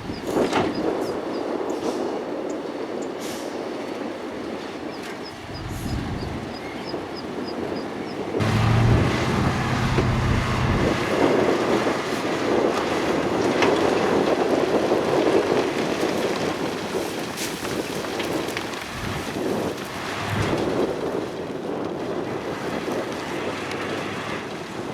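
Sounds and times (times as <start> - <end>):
diesel engine humming: 5.4 - 6.8, 8.4 - 13.0, 19.8 - 21.0
rumble of rock and dirt moving: 5.4 - 6.8, 8.4 - 24.6.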